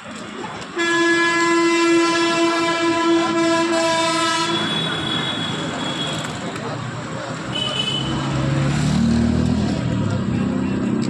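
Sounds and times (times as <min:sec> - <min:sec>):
long steady horn blast: 0:00.8 - 0:06.1.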